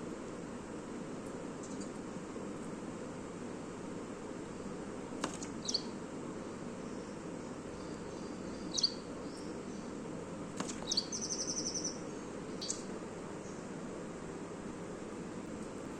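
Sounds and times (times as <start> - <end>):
low background noise: 0.0 - 15.9
small birds chirping: 1.5 - 2.1, 4.4 - 13.9.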